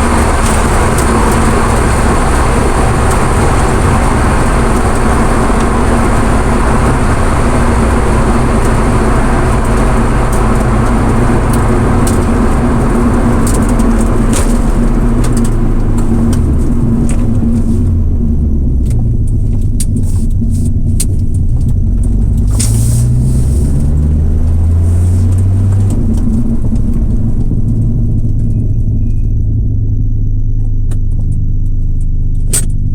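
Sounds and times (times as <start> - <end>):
car engine accelerating: 0.0 - 32.9
road and wind hiss: 22.4 - 28.2.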